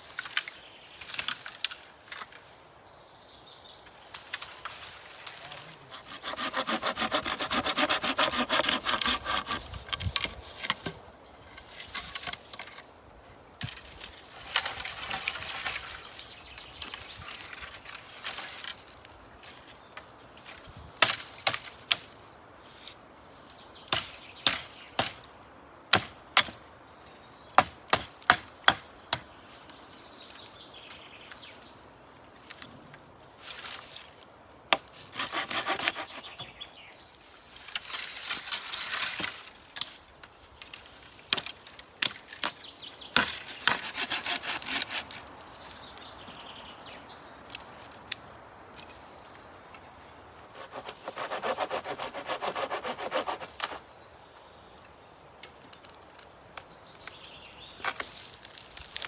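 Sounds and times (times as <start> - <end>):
hand saw cutting wood: 5.8 - 10.4, 35.0 - 36.5, 43.2 - 45.2, 50.5 - 53.8.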